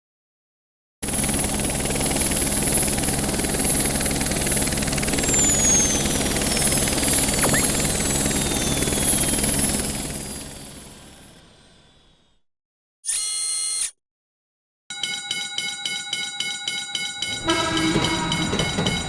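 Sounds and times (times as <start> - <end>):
high whine falling in pitch: 7.3 - 9.4
rhythmic clatter: 16.4 - 19.0
train rumble: 17.4 - 19.0.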